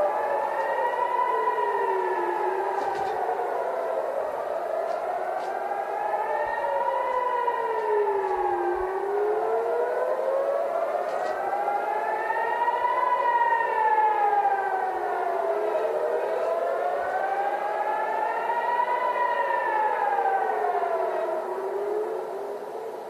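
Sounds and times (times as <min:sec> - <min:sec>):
air-raid sirens wailing: 0:00.0 - 0:23.0.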